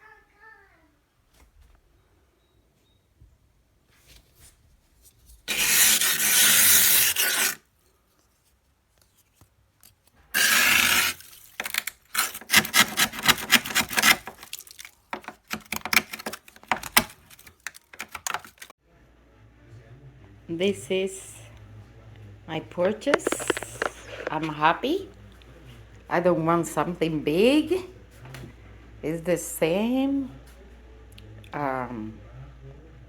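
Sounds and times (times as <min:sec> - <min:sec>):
short scrapes and clicks: 0:22.9 - 0:24.5.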